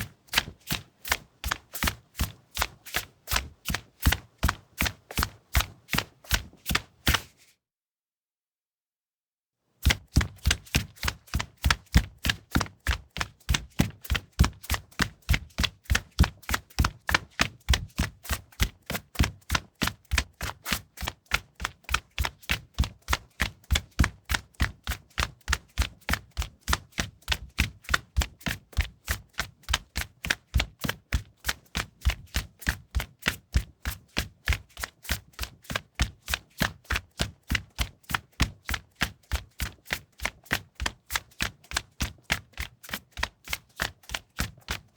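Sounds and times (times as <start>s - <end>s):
running footsteps on linoleum: 0.0s - 7.2s.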